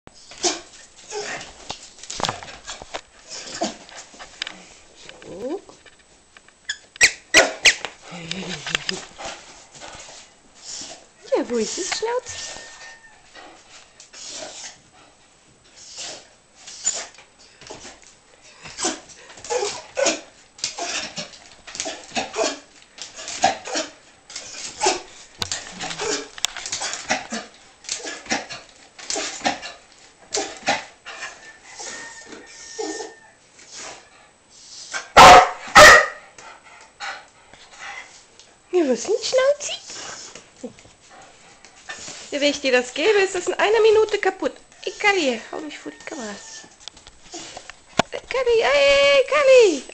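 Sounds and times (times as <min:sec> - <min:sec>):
dog yipping and whining: 0:31.1 - 0:33.4
dog barking: 0:35.2 - 0:36.2.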